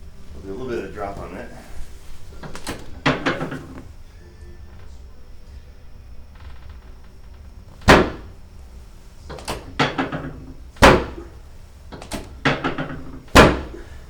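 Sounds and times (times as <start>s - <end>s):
table drop section clunking: 2.2s - 4.0s, 6.4s - 14.0s.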